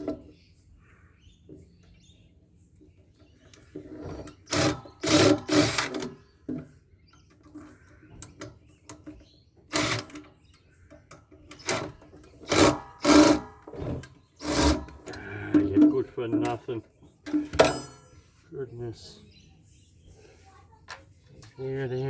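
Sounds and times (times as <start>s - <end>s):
harsh bursts of tool work: 3.8s - 6.2s, 9.7s - 10.3s, 11.5s - 15.8s.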